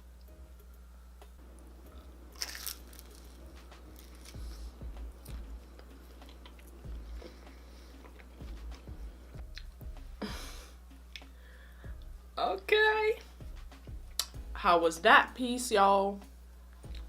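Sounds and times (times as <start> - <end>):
soft chewing: 1.9 - 9.8.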